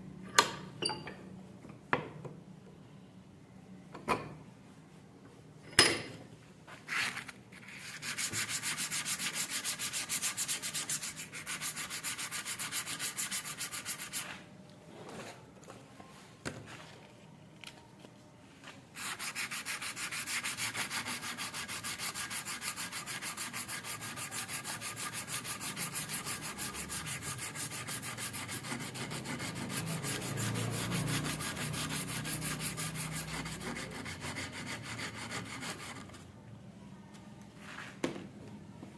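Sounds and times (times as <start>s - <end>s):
sandpaper rasping on metal: 7.6s - 14.3s, 19.0s - 36.0s.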